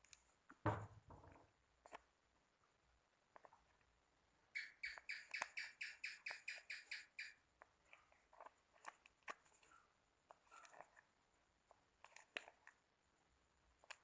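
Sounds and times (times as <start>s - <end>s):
squeaky slime squelches: 4.6s - 7.4s.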